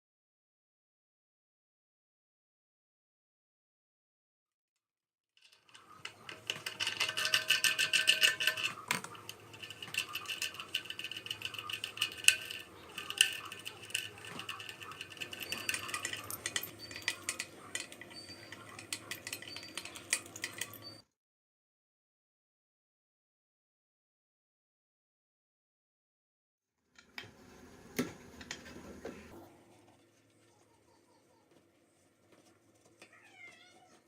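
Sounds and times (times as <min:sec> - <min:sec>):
metal tools clinking and scraping: 0:05.5 - 0:21.0.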